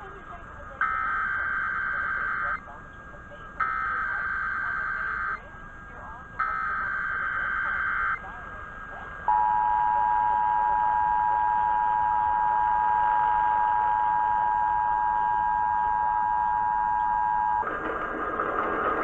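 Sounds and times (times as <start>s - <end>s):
noisy sound: 13.5s - 19.0s.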